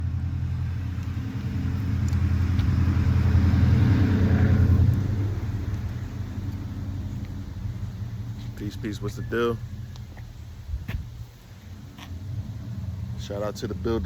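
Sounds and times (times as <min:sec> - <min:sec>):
vehicle driving past: 0:00.0 - 0:10.5, 0:11.8 - 0:14.0.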